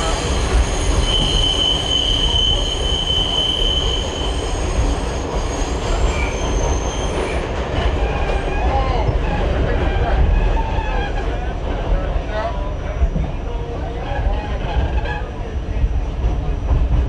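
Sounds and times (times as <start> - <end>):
high-pitched wheel squeal: 0.0 - 7.4
subway train rumbling on rails: 0.0 - 17.0.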